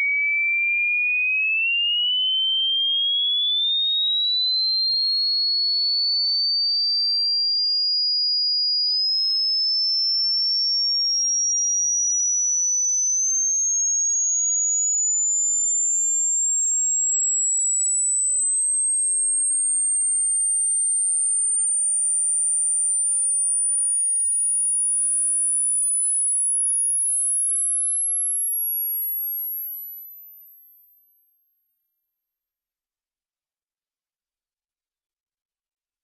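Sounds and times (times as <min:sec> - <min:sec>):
sine tone sweeping upward: 0:12.6 - 0:30.9.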